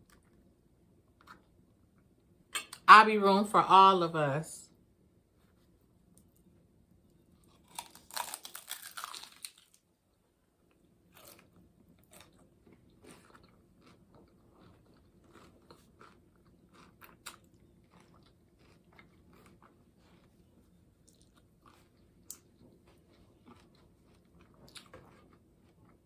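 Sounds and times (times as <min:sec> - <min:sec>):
chewing with soft crunches: 0:00.0 - 0:02.3, 0:05.6 - 0:26.0
crunchy taco bite: 0:07.4 - 0:09.9, 0:10.7 - 0:26.0.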